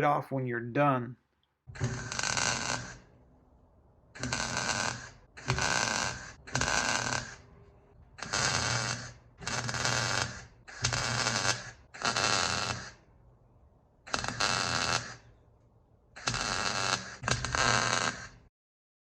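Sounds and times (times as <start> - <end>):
welder arc crackling: 1.7 - 3.3, 4.0 - 13.1, 14.0 - 15.3, 16.1 - 18.5.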